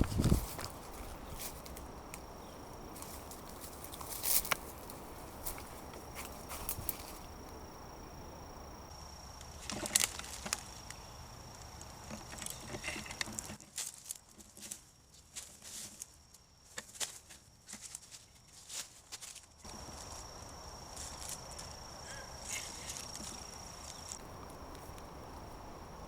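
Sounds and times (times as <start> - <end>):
footsteps through brush: 0.0 - 8.1, 16.7 - 21.8, 22.6 - 26.0.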